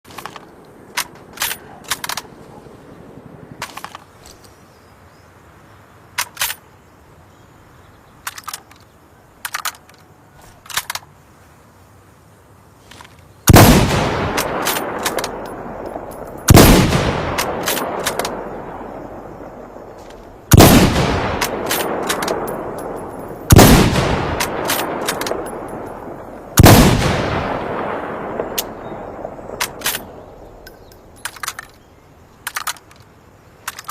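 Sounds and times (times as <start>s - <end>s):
rifle bolt metallic clicks: 0.1s - 2.4s, 3.6s - 4.5s, 6.2s - 6.6s, 8.2s - 11.1s, 14.3s - 19.0s, 20.0s - 28.9s, 29.5s - 33.9s
loud rifle shots: 13.5s - 31.2s.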